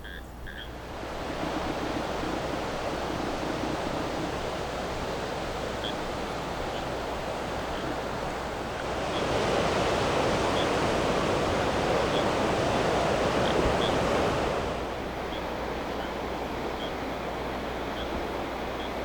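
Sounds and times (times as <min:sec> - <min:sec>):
ocean waves washing on beach: 0:00.5 - 0:19.0.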